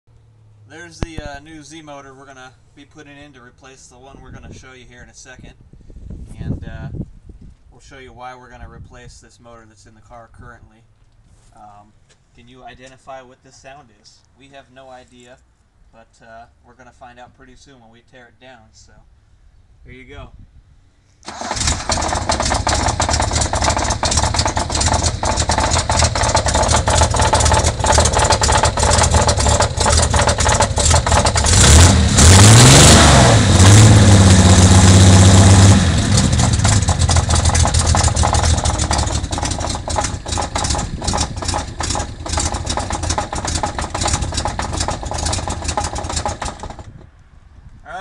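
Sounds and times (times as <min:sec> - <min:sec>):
inline-six engine running: 0:21.5 - 0:46.9
rapid clattering engine tick: 0:21.6 - 0:32.5, 0:33.6 - 0:47.1.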